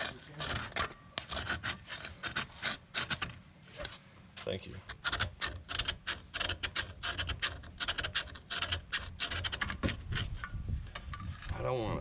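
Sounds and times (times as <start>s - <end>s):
file rasping on metal: 0.0s - 3.4s, 4.9s - 10.6s.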